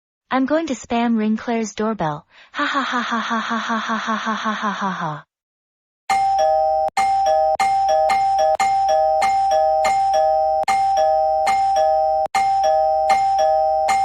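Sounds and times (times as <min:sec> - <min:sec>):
ding-dong doorbell chime: 0:06.1 - 0:14.0.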